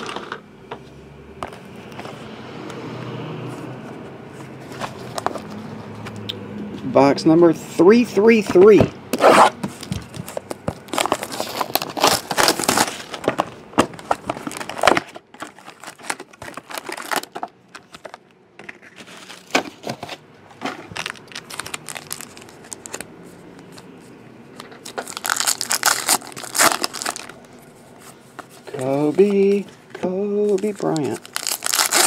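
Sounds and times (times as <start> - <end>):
wrappers crinkling and tearing: 10.2 - 18.2, 20.8 - 23.1, 24.6 - 27.6, 28.5 - 32.0.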